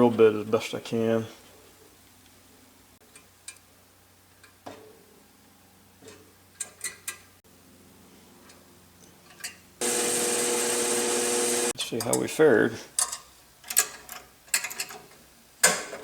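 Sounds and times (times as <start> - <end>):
drill press whining: 9.8 - 11.8.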